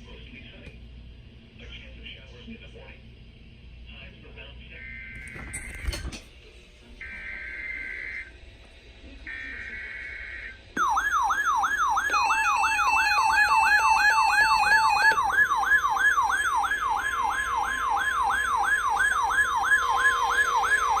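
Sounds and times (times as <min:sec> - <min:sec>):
rising alert siren: 0:07.0 - 0:08.3, 0:09.3 - 0:21.0
steady beeping tones: 0:09.3 - 0:21.0.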